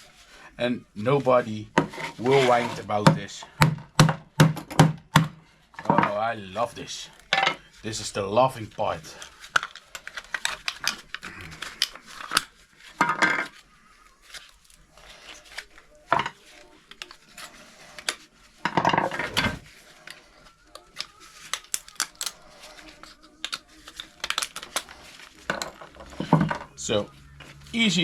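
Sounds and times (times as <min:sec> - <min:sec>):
plastic cracking: 0:09.6 - 0:12.5, 0:21.0 - 0:22.7, 0:23.4 - 0:25.8
hand tools clinking on plastic: 0:21.5 - 0:22.4, 0:23.5 - 0:24.9.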